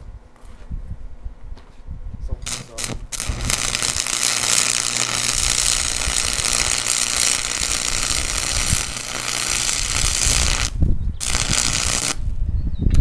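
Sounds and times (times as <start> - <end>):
welding arc crackling: 2.4 - 12.4.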